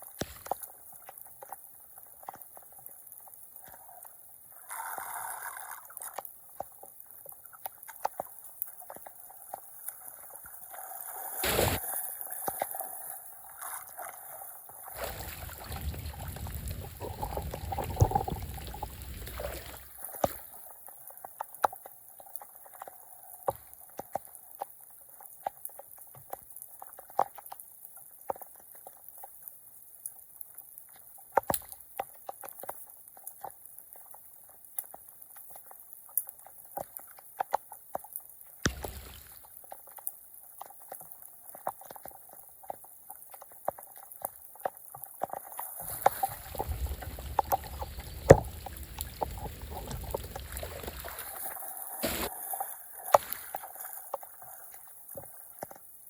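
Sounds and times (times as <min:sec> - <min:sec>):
loud splash: 0:11.4 - 0:11.8
small clicks and knocks: 0:30.4 - 0:51.1.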